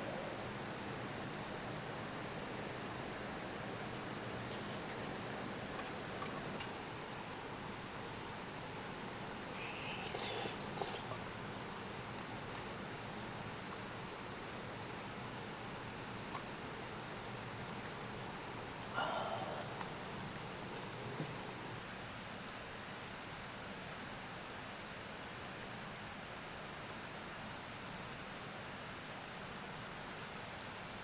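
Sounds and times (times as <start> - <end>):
insect chorus buzzing: 0.0 - 22.0.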